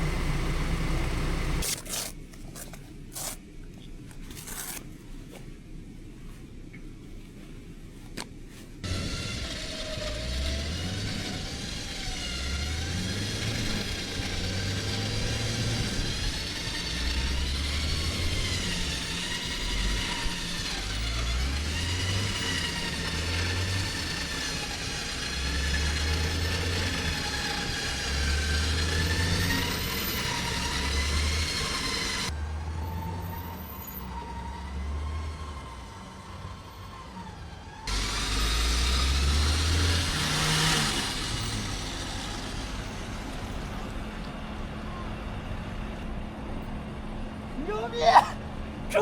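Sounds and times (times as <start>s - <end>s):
suv engine revving under load: 8.8s - 46.0s.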